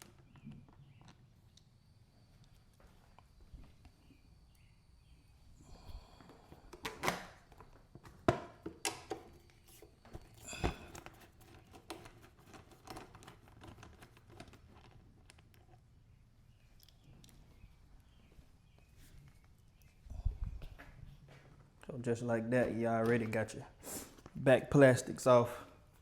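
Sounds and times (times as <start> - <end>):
hand tools and plastic panels knocking: 6.8 - 9.4.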